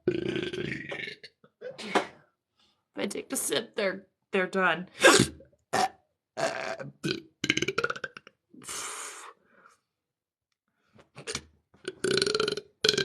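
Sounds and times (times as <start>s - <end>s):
woman burping: 0.0s - 2.1s, 5.0s - 8.2s.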